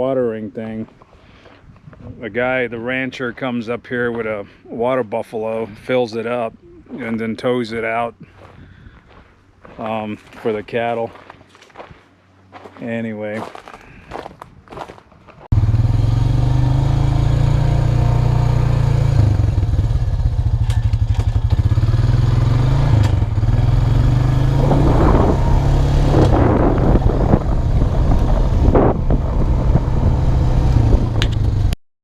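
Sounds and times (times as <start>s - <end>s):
quad bike engine running: 15.6s - 31.8s.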